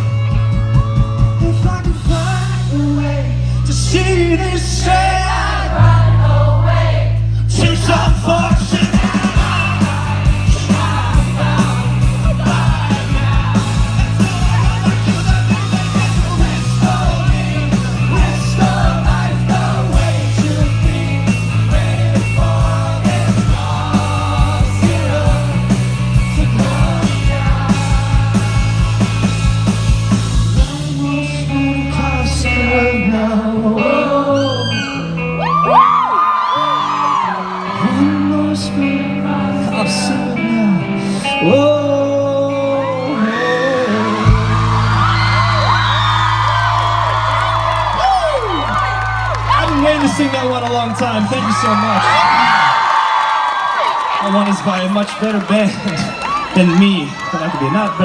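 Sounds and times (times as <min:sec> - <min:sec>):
live rock band playing: 0:00.0 - 0:06.5, 0:07.3 - 0:53.0
bass line: 0:00.0 - 0:36.1, 0:37.8 - 0:53.2
man singing: 0:01.2 - 0:05.7, 0:07.5 - 0:29.3, 0:30.5 - 0:35.2, 0:37.7 - 0:44.8
drum kit steady beat: 0:07.6 - 0:31.0.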